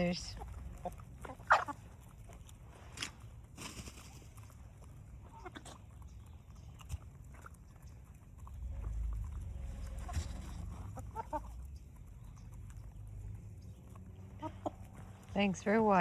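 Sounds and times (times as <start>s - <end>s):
chickens and turkeys clucking: 0.0s - 16.0s
low rumble on microphone: 8.4s - 13.8s.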